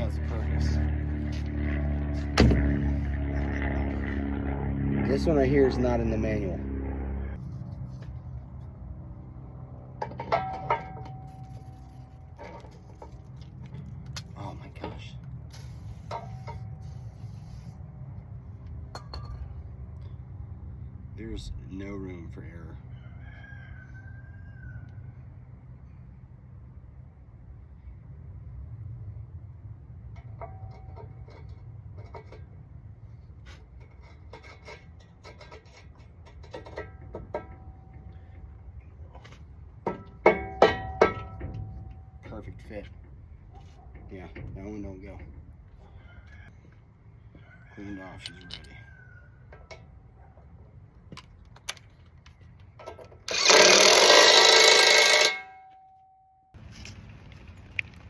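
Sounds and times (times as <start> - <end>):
steady low rumble: 0.0 - 22.4
metal parts clinking and scraping: 10.0 - 14.1, 48.0 - 48.8, 51.2 - 55.8
power tool running: 53.2 - 55.5.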